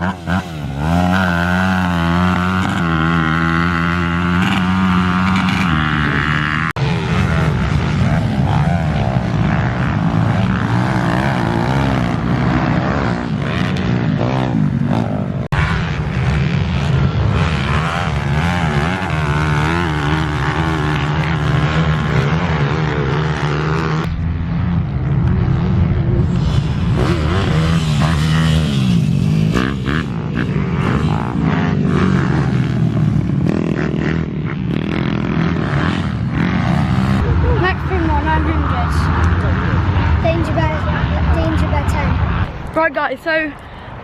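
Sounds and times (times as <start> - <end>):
minibike engines revving: 0.0 - 44.0.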